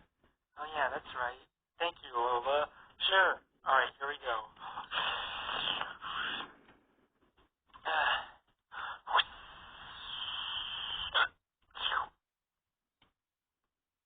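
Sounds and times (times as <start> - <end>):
child making mouth sound effects: 9.1 - 12.2.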